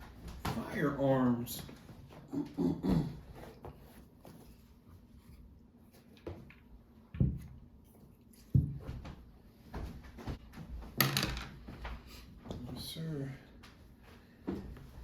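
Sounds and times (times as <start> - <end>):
hard objects knocking and clunking: 10.2 - 11.8.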